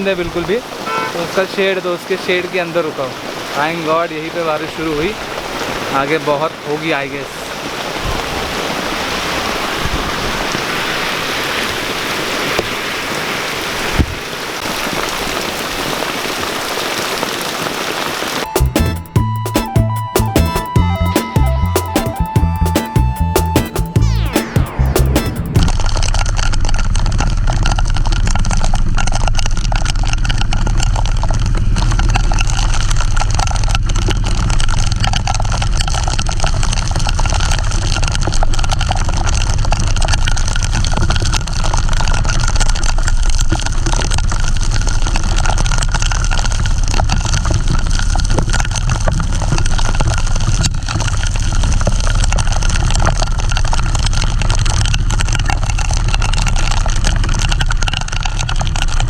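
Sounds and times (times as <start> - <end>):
motorcycle engine and road noise: 0.0 - 3.0, 25.4 - 59.0.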